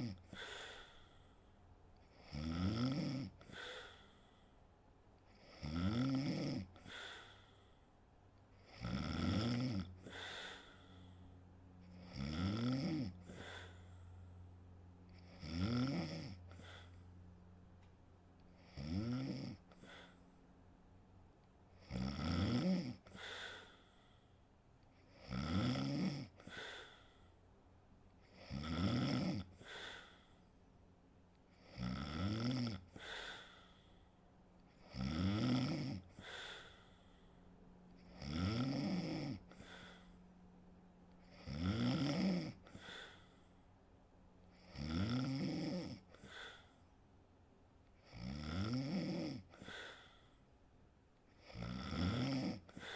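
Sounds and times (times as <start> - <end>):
woman snoring: 0.0 - 1.0, 2.1 - 4.1, 5.3 - 7.5, 8.6 - 11.0, 11.9 - 13.9, 15.2 - 17.0, 18.6 - 20.2, 21.8 - 23.9, 25.0 - 27.1, 28.2 - 30.3, 31.5 - 33.9, 34.7 - 37.1, 38.0 - 40.2, 41.3 - 43.3, 44.5 - 46.8, 48.0 - 50.2, 51.3 - 52.9.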